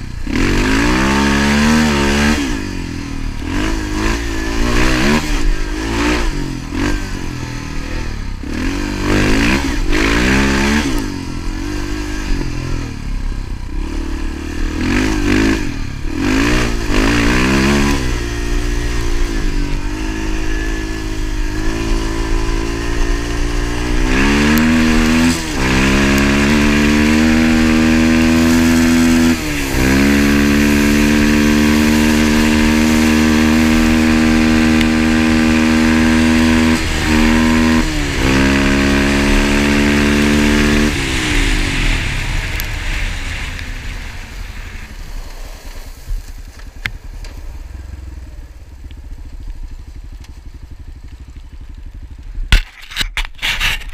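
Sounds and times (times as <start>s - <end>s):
motorcycle engine revving: 0.0s - 53.9s.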